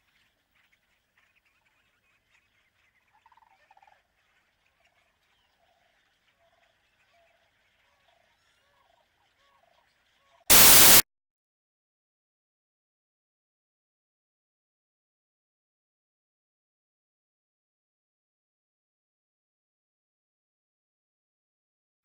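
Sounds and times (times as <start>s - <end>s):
faint high hiss: 10.5s - 11.0s
loud burst of noise: 10.5s - 11.0s.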